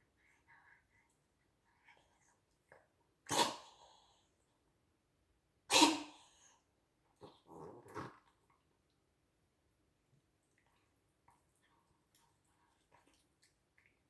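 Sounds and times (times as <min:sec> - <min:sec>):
animal sneezing: 0:03.3 - 0:03.8, 0:05.7 - 0:06.3.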